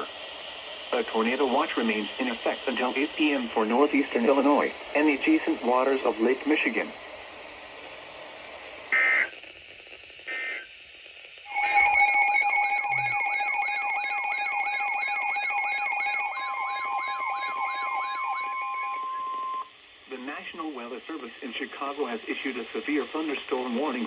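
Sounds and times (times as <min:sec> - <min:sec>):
warbling electronic alert alarm: 0:11.5 - 0:19.6
high data bursts: 0:11.5 - 0:19.7
steady warning tone: 0:11.5 - 0:19.7.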